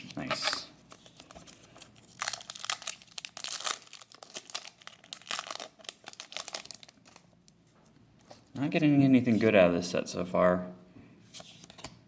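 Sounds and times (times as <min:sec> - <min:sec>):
foil wrapper crinkling and tearing: 0:00.9 - 0:07.4.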